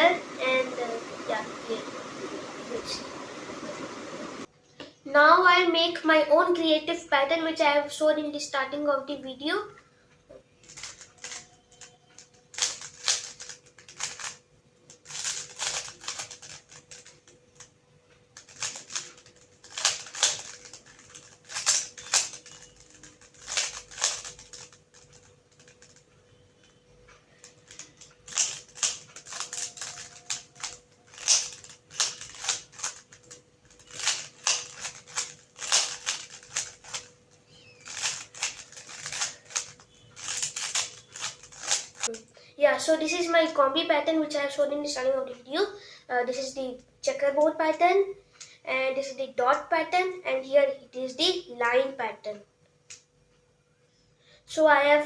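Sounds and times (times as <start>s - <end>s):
puzzle cube plastic clicks: 10.6s - 17.7s, 18.4s - 26.0s, 27.4s - 42.2s.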